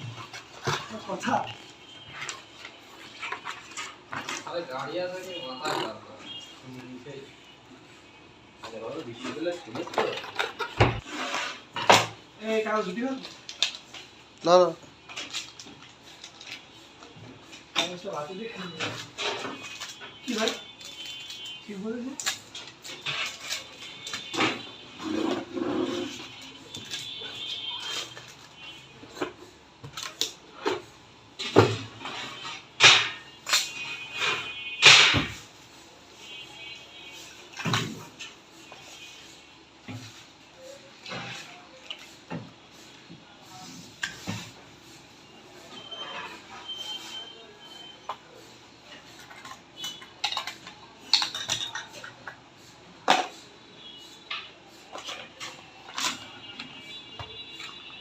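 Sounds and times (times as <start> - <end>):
hard objects clacking and knocking: 9.3 - 12.1, 49.2 - 52.5.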